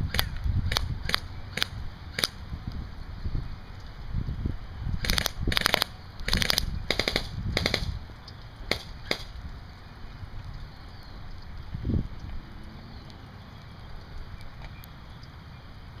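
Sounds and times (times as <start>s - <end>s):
wind buffeting microphone: 0.0s - 16.0s
airsoft rifle firing: 5.0s - 8.0s, 8.7s - 9.4s.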